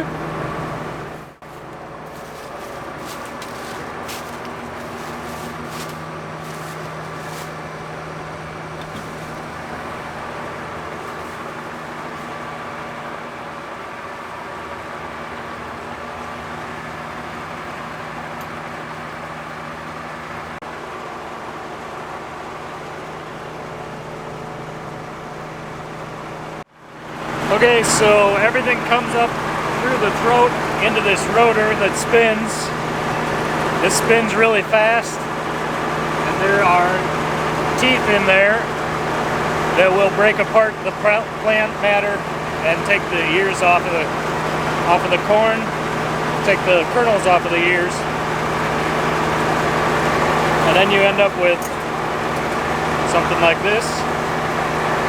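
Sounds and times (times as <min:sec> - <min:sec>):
combine harvester drone: 0:00.0 - 0:55.0.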